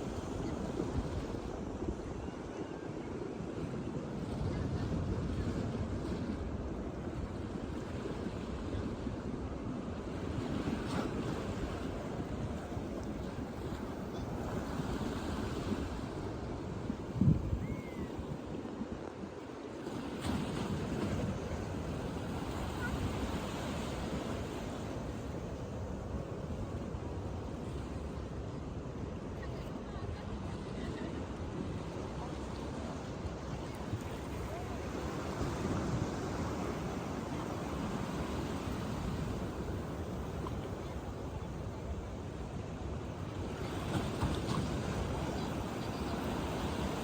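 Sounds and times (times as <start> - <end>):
wind on microphone: 0.0 - 28.0
sea waves washing onto beach: 4.4 - 47.0
wind buffeting microphone: 10.2 - 19.3.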